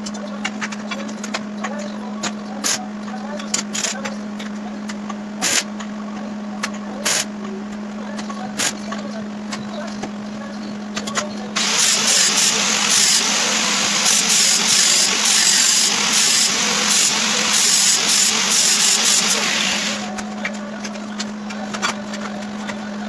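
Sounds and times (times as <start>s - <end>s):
electrical hum: 11.5s - 20.4s
welding arc crackling: 11.6s - 20.1s.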